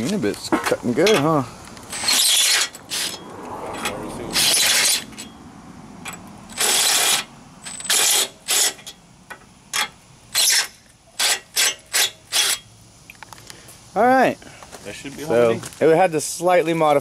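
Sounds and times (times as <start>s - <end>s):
step drill cutting through steel: 6.5s - 8.8s.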